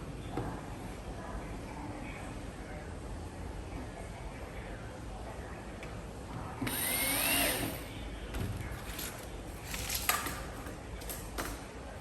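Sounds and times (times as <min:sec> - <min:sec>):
power tool whine: 0:06.7 - 0:07.8.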